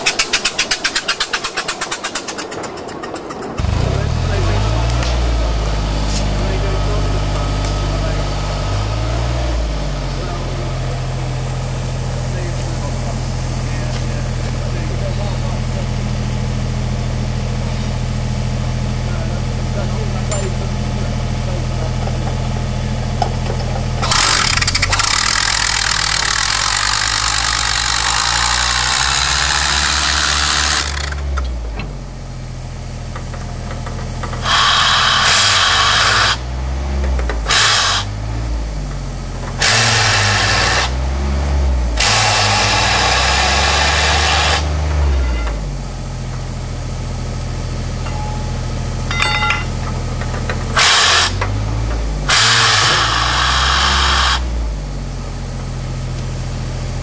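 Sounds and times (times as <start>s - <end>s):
low engine hum: 0.0s - 57.0s
compressed air hissing: 34.4s - 36.4s, 37.5s - 38.2s, 52.3s - 54.6s.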